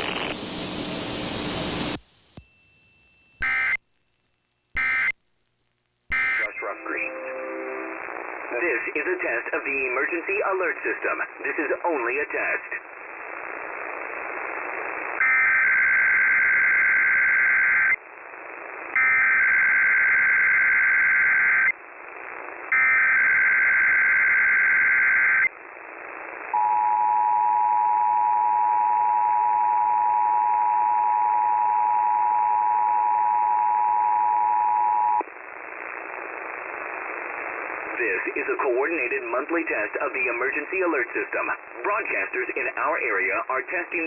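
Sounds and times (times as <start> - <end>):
radio hiss: 0.0 - 2.0, 6.1 - 26.6, 35.2 - 44.0.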